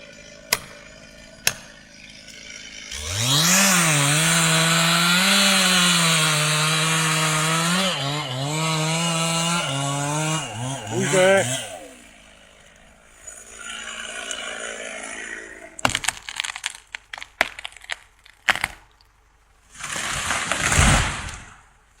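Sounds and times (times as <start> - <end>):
tree trunk cracking: 0.2 - 13.3, 15.6 - 21.7
tree crashing down with thud: 15.8 - 18.9, 19.7 - 21.7.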